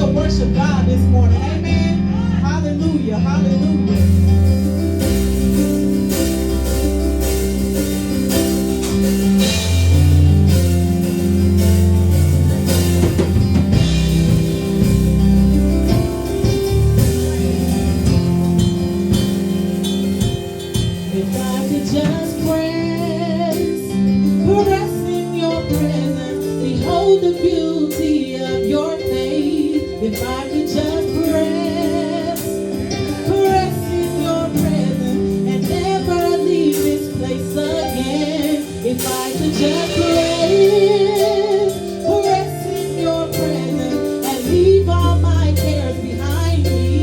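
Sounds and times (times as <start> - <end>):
worship band playing slow song: 0.0 - 47.0
person singing: 21.1 - 47.0.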